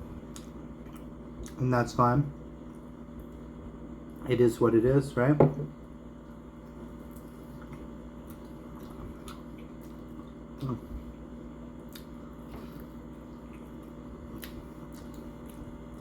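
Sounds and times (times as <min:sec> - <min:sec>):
steady electrical hum: 0:00.0 - 0:16.0
chewing crispy food: 0:06.2 - 0:16.0.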